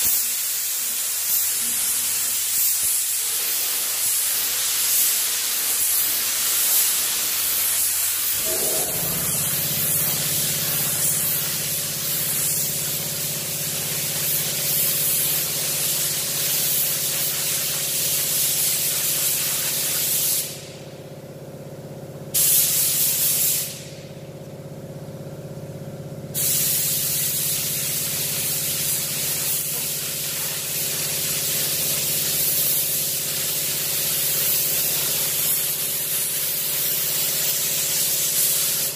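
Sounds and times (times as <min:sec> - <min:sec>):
paint spray gun hissing: 0:00.0 - 0:20.8, 0:22.4 - 0:24.0, 0:26.4 - 0:38.9
steady low hum: 0:08.4 - 0:14.6.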